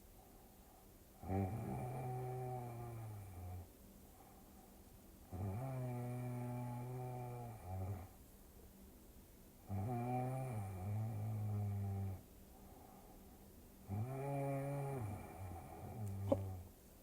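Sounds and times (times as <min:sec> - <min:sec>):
person snoring: 0:01.2 - 0:03.6, 0:13.9 - 0:16.6.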